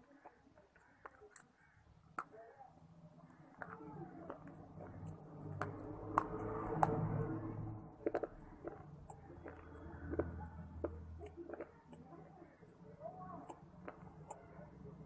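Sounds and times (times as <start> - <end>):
person chewing crunchy pieces: 8.0 - 12.0.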